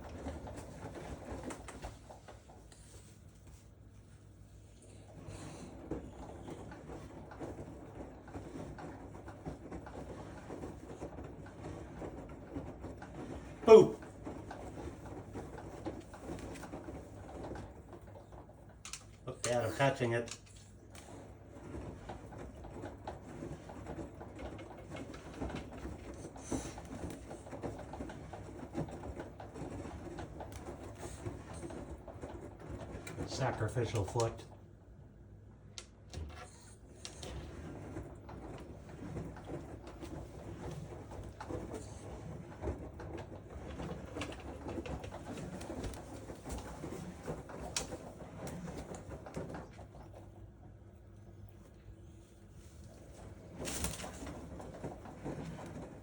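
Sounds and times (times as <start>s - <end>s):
washing machine humming: 0.0s - 56.0s.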